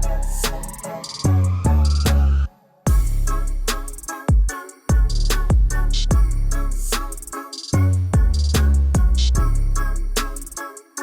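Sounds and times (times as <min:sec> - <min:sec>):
electronic music with heavy bass: 0:00.0 - 0:11.0.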